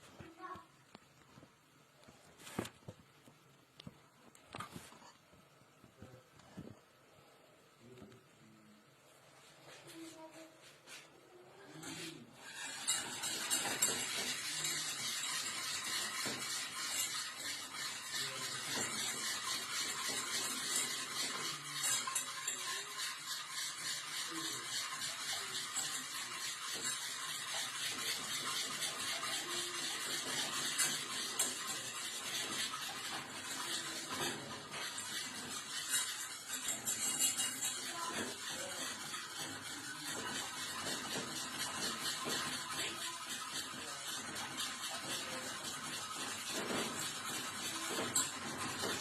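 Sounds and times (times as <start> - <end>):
utensil scraping a pot while stirring: 10.9 - 49.0.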